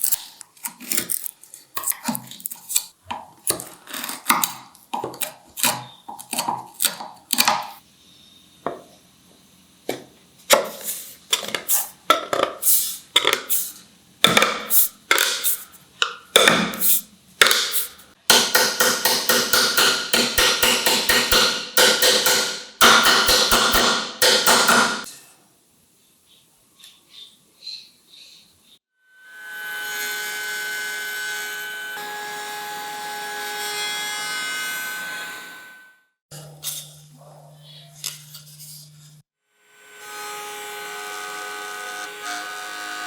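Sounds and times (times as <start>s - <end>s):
hand tool rasping wood: 17.4s - 25.1s.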